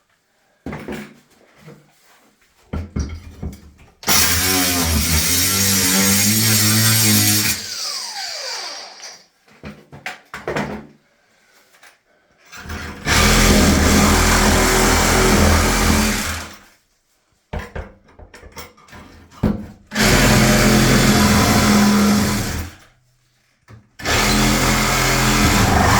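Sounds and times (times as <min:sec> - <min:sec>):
cordless grinder running: 0:04.0 - 0:09.1, 0:20.0 - 0:22.8, 0:24.0 - 0:25.9
motor winding down whine: 0:07.4 - 0:09.2, 0:25.2 - 0:25.9.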